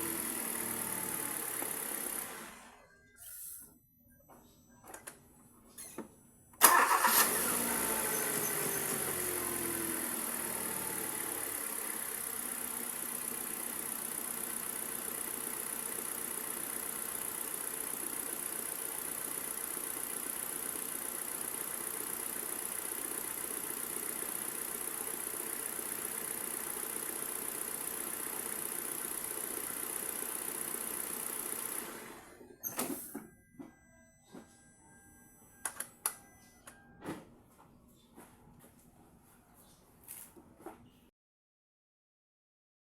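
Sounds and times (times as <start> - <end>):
car engine idling: 0.0 - 2.7, 6.7 - 32.2.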